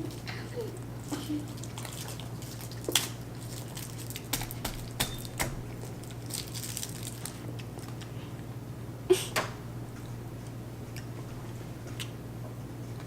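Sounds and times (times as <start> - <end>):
steady low hum: 0.0 - 13.0
chewing with wet mouth clicks: 7.4 - 8.5, 10.0 - 11.2, 11.8 - 12.2.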